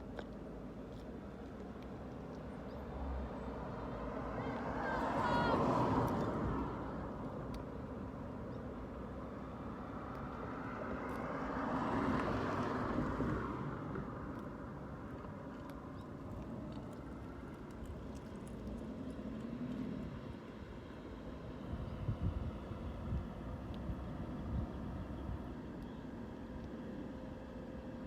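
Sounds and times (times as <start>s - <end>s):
wind buffeting microphone: 21.6s - 25.5s.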